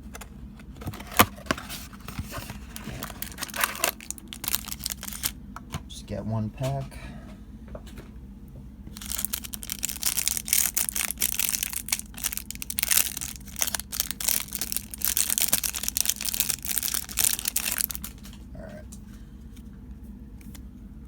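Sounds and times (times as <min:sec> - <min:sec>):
wrapper torn and crinkled: 0:02.9 - 0:05.4, 0:09.0 - 0:18.3.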